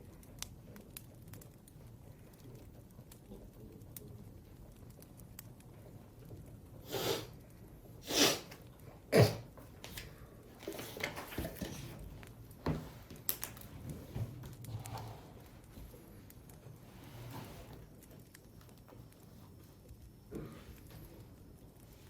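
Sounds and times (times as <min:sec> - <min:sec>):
person coughing: 0:09.1 - 0:09.5.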